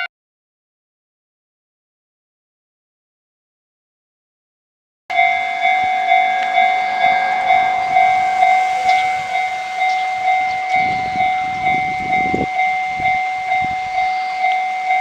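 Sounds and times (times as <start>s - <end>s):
level crossing warning bell: 5.1s - 15.0s.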